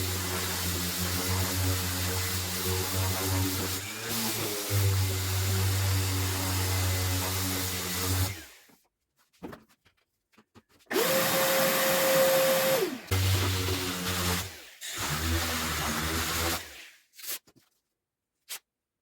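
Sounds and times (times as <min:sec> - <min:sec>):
electric power tool whining: 0:00.0 - 0:08.7, 0:10.9 - 0:16.8.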